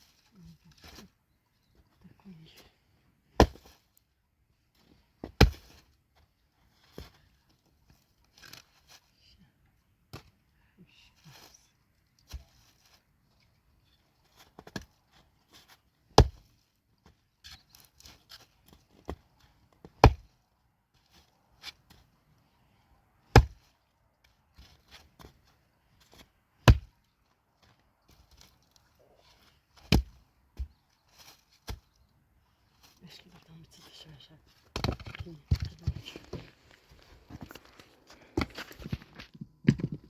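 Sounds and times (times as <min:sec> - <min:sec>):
rustling: 0:30.6 - 0:40.0.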